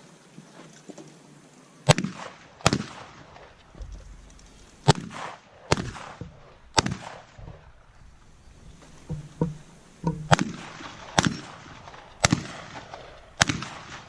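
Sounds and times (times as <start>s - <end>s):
shotgun shots: 1.9s - 3.5s, 4.8s - 7.6s, 10.1s - 14.0s.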